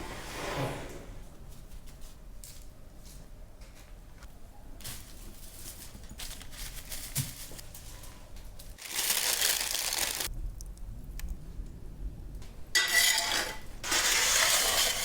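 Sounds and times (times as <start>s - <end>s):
crinkling and rustling: 1.4s - 10.3s.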